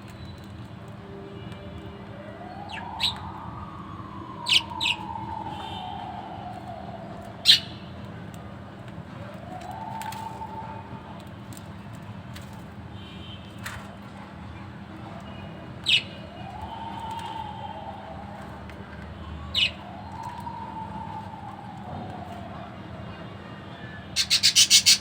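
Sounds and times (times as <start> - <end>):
budgerigar chirps: 24.2 - 25.0.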